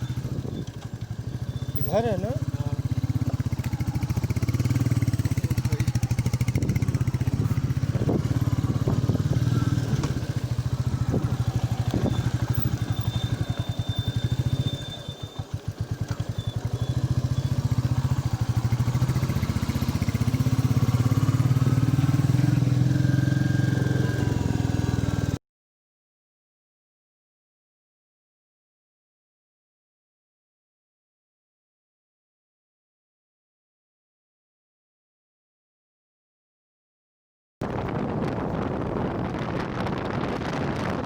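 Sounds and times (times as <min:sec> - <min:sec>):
high brake whistle: 0:00.0 - 0:04.2, 0:08.6 - 0:18.4
motorcycle engine running: 0:00.0 - 0:25.4, 0:37.7 - 0:41.0.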